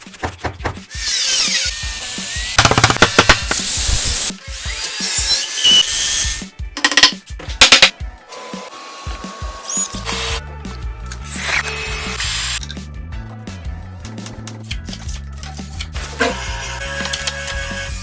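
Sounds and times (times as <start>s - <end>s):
background music with steady beat: 0.0s - 18.0s
woodworking power tools running: 1.0s - 4.3s.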